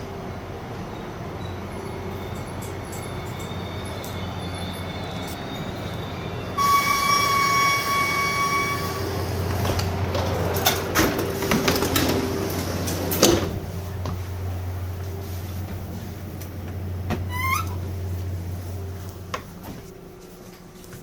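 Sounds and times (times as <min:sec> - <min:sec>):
train clanks and rattles: 0:00.0 - 0:21.0
train rumbling: 0:00.0 - 0:21.0
train horn: 0:06.6 - 0:09.9.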